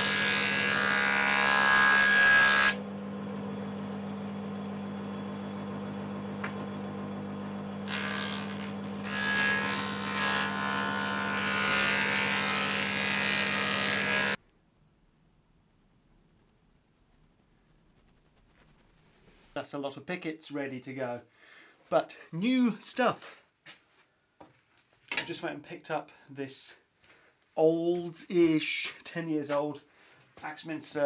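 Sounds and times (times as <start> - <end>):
planer motor hum: 0.0 - 14.4
wood passing over planer cutter: 0.0 - 14.4.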